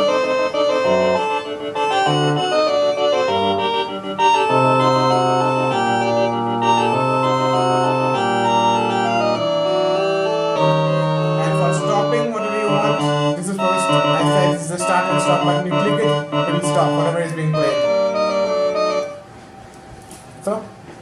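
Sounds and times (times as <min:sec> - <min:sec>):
electronic keyboard demo song: 0:00.0 - 0:19.4.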